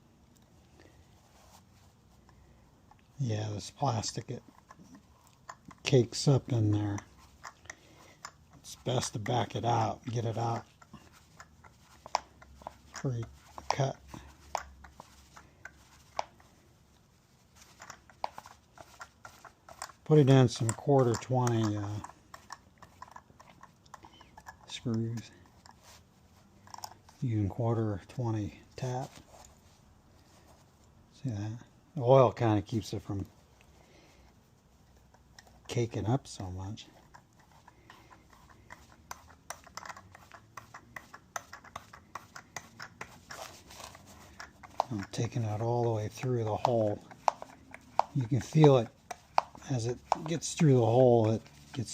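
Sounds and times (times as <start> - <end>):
hand tap clicking and creaking in plastic: 4.1 - 16.5, 17.7 - 25.8, 37.0 - 51.9.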